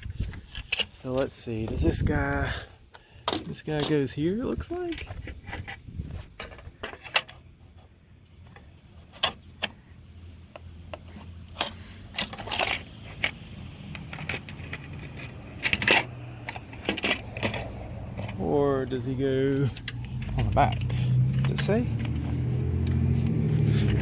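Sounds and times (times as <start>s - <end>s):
plastic parts clicking and clinking: 2.9s - 7.5s, 10.5s - 18.6s, 19.4s - 23.0s.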